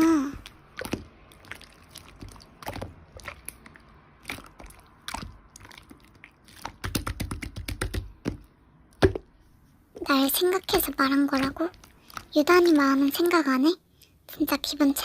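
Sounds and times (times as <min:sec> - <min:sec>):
slime squished by hand: 0:00.2 - 0:08.4.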